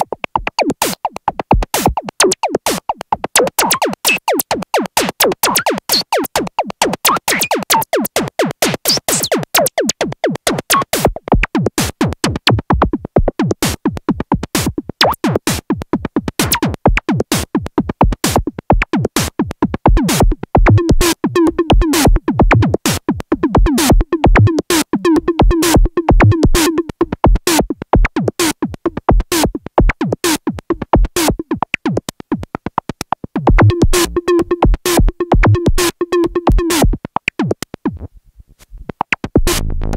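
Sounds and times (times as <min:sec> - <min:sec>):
synthesizer sequenced notes: 0:20.0 - 0:38.0, 0:39.0 - 0:39.9.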